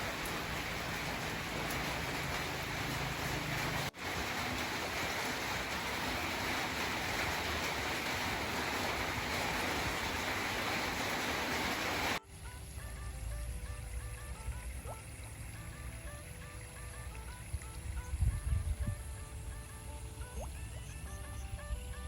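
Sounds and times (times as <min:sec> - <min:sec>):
rushing water: 0:00.0 - 0:21.1
quiet music: 0:12.2 - 0:22.0.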